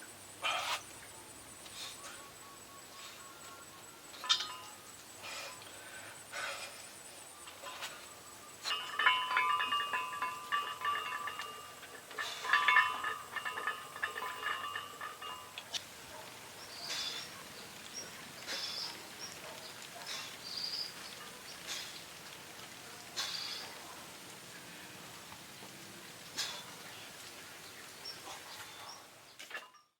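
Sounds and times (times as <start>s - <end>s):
birds chattering: 11.7s - 29.5s.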